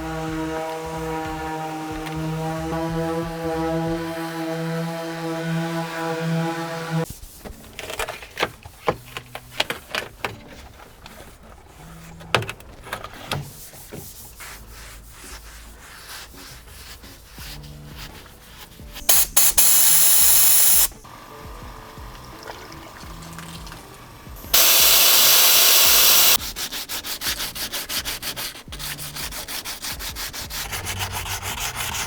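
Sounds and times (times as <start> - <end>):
sanding and scraping car panels: 0.0 - 20.8, 24.6 - 32.0
loud air hiss: 19.1 - 21.0, 24.6 - 26.4.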